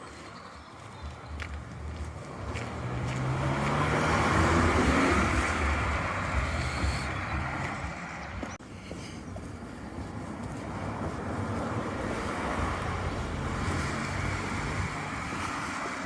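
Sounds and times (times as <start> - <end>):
car driving past: 0.4 - 8.6, 10.4 - 16.0.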